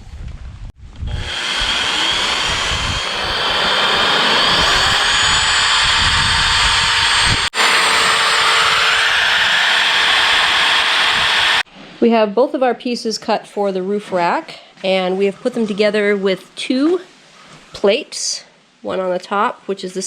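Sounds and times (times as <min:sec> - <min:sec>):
electric drill whining: 0:01.0 - 0:11.6.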